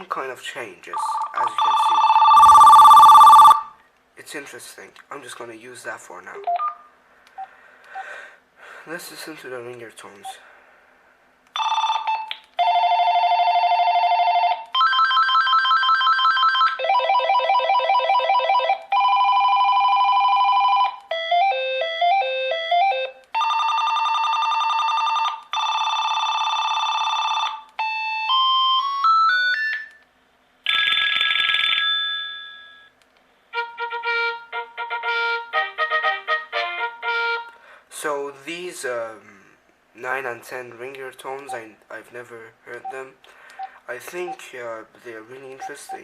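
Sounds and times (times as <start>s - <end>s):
phone ringer tones: 1.0s - 3.8s, 11.6s - 30.0s.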